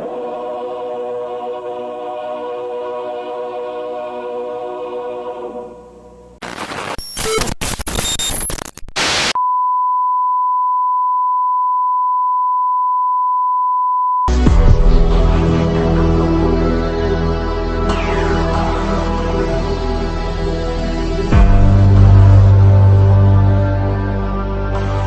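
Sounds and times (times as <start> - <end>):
crackling noise bursts: 6.4 - 9.4
loud music with heavy bass: 14.3 - 25.0
music: 14.3 - 25.0.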